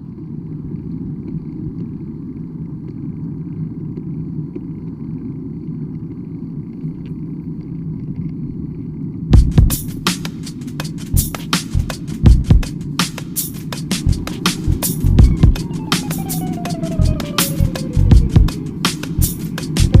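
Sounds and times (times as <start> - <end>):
music with sharp beats: 9.4 - 20.0
low rumble: 14.0 - 20.0.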